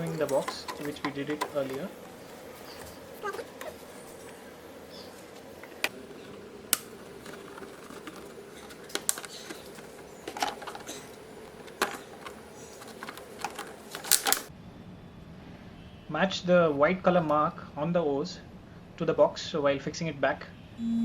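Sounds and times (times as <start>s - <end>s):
hard plastic parts clicking and knocking: 0.0s - 4.3s, 5.6s - 14.5s
faint steady hum: 0.0s - 21.0s.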